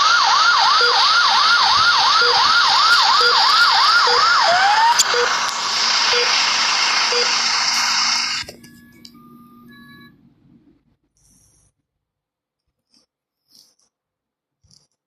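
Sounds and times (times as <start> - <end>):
loud steady rush: 0.0 - 8.5
ambulance siren: 0.0 - 10.1.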